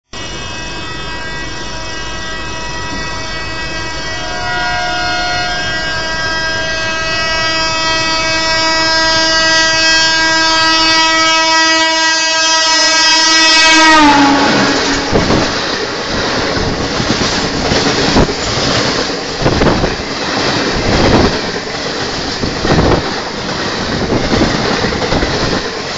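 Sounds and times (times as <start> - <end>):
locomotive horn blast: 0.1 - 15.6
train running rumble: 0.2 - 25.9.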